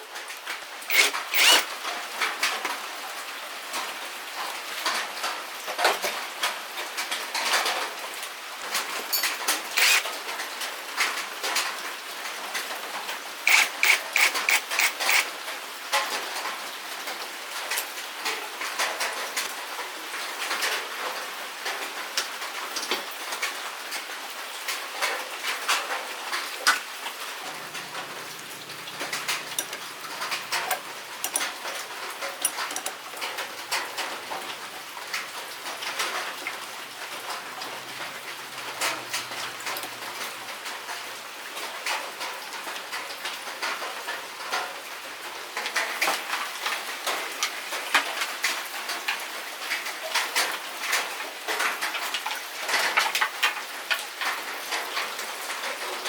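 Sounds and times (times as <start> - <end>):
sharp ringing clicks: 0.9 - 1.7, 9.2 - 10.1, 13.5 - 15.3, 27.8 - 31.6, 32.4 - 33.0
clicks taps and scraping on metal: 13.5 - 15.3, 27.6 - 34.6.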